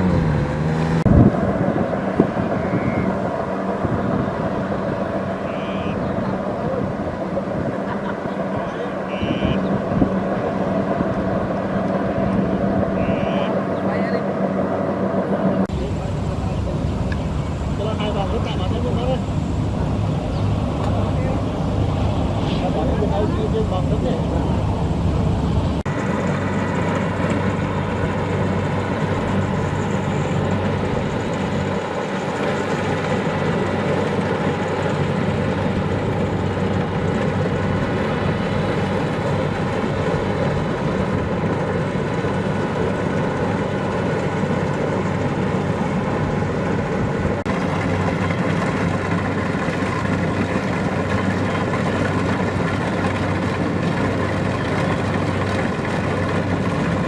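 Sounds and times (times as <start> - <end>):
harvester diesel engine droning: 0.0 - 14.3, 14.9 - 57.0.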